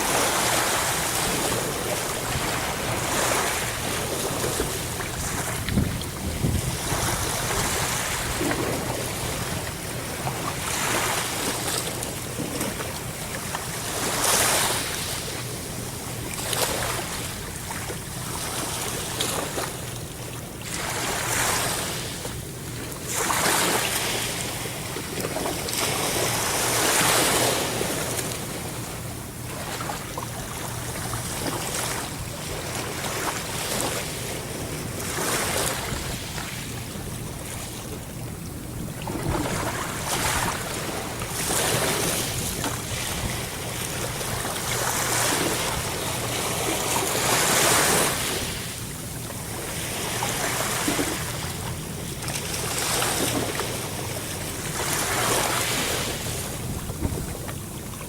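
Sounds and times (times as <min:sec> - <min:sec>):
ocean waves washing in: 0:20.7 - 0:58.0.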